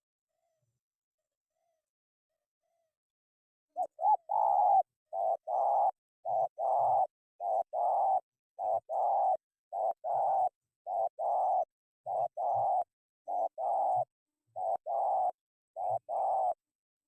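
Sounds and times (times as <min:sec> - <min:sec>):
dove cooing: 0:03.8 - 0:16.7.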